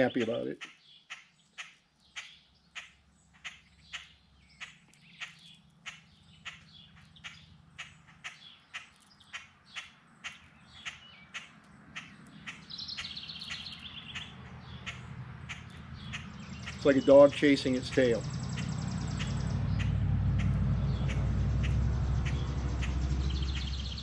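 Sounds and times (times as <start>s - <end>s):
blackbird alarm chips: 0.0s - 24.0s
buzzy bird trill: 2.1s - 24.0s.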